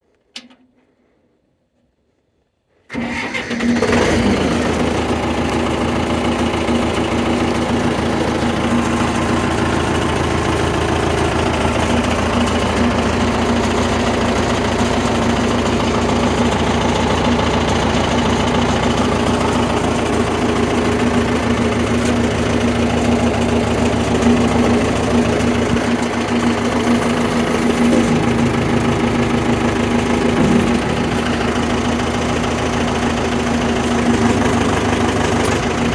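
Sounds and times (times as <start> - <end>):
backhoe engine idling: 2.9 - 35.9.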